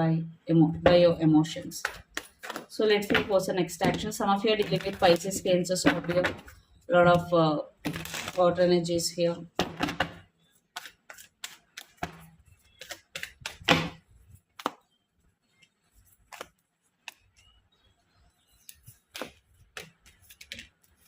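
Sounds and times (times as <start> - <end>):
cards shuffled clicking and slapping: 1.8 - 3.2, 10.7 - 14.8, 16.1 - 17.6, 18.6 - 21.0.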